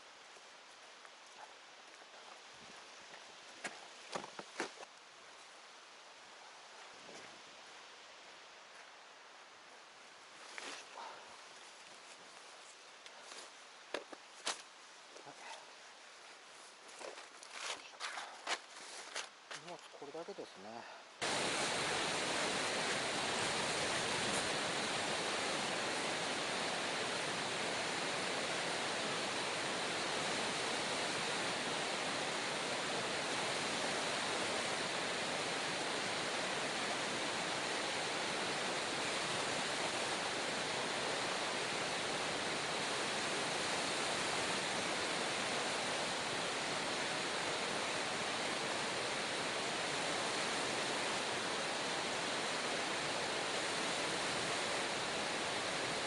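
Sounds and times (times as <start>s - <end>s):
river rushing: 21.2s - 56.0s.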